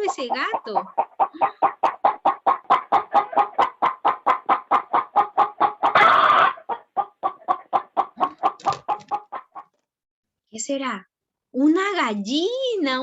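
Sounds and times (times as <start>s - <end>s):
hen clucking: 0.0s - 9.8s.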